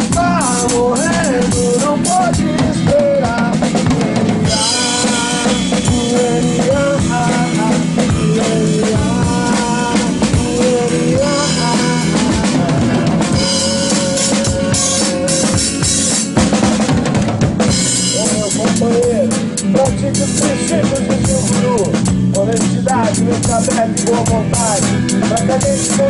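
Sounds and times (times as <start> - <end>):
hip-hop instrumental beat: 17.7 - 26.0.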